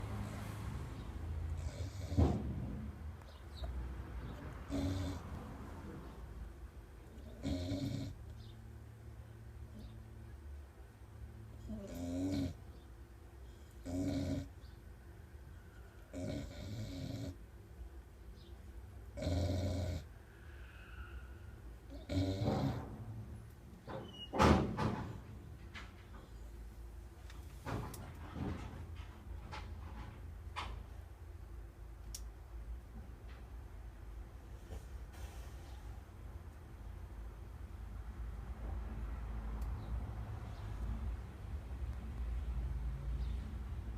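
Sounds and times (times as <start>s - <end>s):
small dog snoring: 1.6s - 2.4s, 4.7s - 5.3s, 7.2s - 8.2s, 11.6s - 12.6s, 13.6s - 14.6s, 16.1s - 17.4s, 19.2s - 20.1s, 21.9s - 22.9s.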